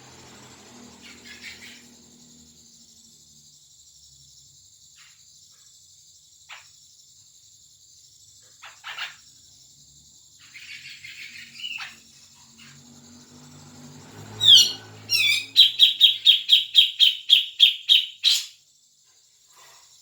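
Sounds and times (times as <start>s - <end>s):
bulbul calling: 14.4s - 18.6s.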